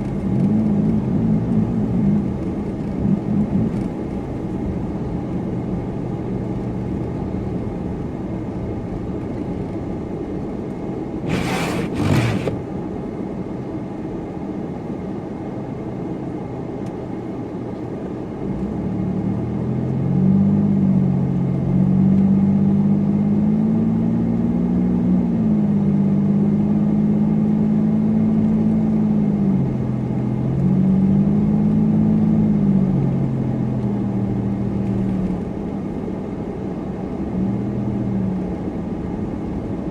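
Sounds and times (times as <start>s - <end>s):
road rumble: 11.0s - 12.9s
car engine accelerating: 11.3s - 12.6s.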